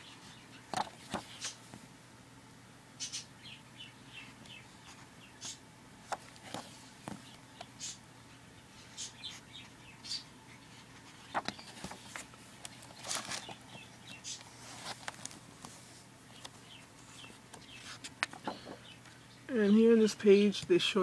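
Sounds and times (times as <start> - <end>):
faint steady hum: 0.0 - 21.0
paper rustling and crinkling: 0.7 - 1.7, 5.0 - 7.2, 11.0 - 18.8.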